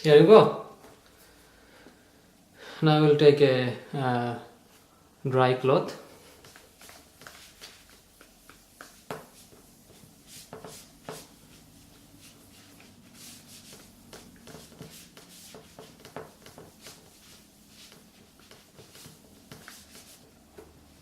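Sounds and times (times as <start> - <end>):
cloth rubbing a laptop: 6.2 - 21.0.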